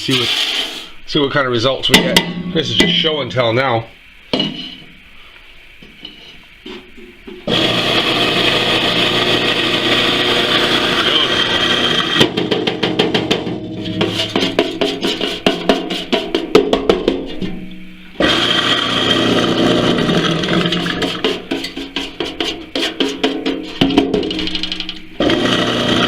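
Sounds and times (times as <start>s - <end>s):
coffee grinder grinding peas: 7.5s - 12.3s, 18.2s - 23.2s, 25.2s - 26.0s.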